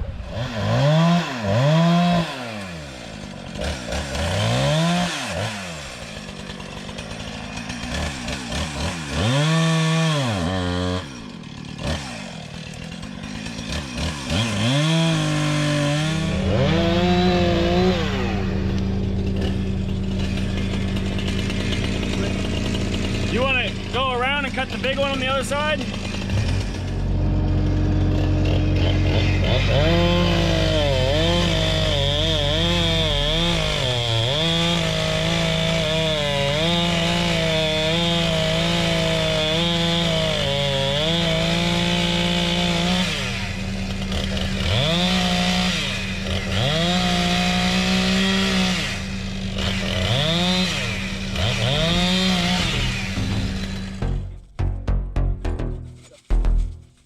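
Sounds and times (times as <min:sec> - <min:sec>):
chainsaw running: 0:00.0 - 0:54.5
excavator engine idling: 0:16.1 - 0:31.1.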